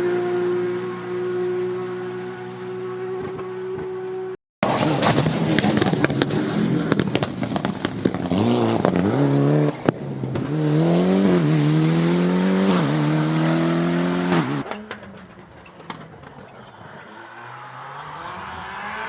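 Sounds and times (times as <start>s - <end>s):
car engine at full throttle: 0.0s - 19.0s
exhaust crackling pops: 4.6s - 9.2s, 14.3s - 17.7s.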